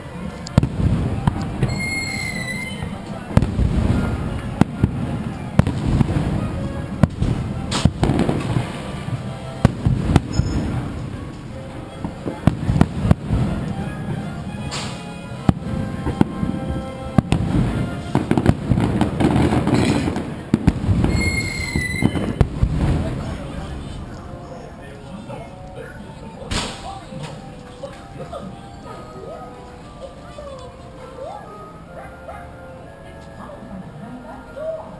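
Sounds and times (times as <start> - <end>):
faint music: 0.0 - 34.9
fireworks bangs: 0.6 - 11.4, 12.0 - 13.9, 14.7 - 24.2.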